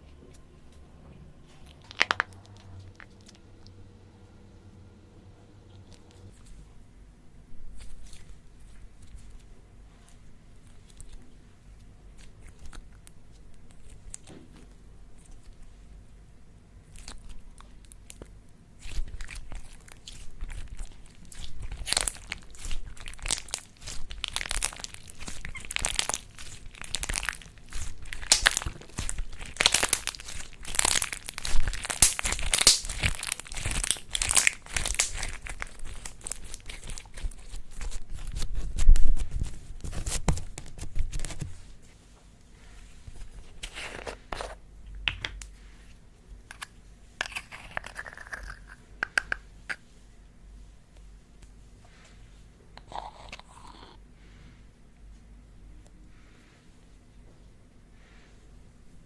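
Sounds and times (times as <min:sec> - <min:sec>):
slime crackling: 0:10.1 - 0:15.7, 0:16.8 - 0:41.8.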